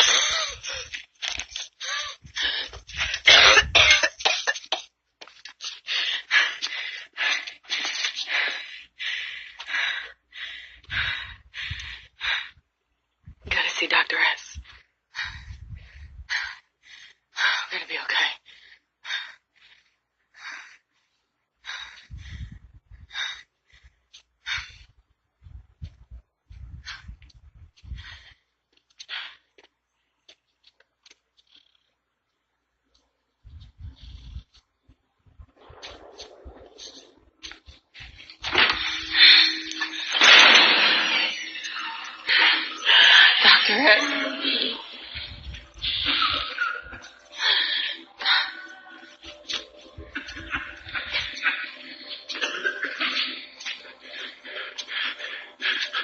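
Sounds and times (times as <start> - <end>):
person gasping and coughing: 0.0 - 4.6
person coughing: 3.1 - 4.6.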